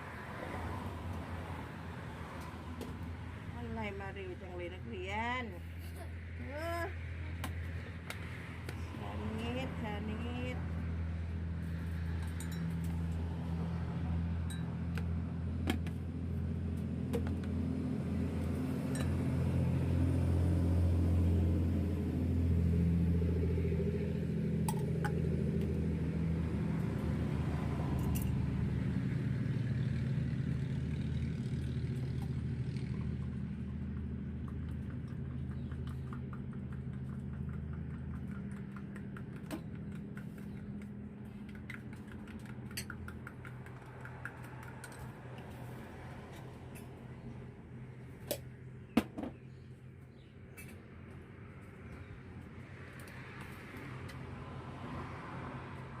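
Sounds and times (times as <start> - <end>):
vehicle engine running: 6.6 - 52.1.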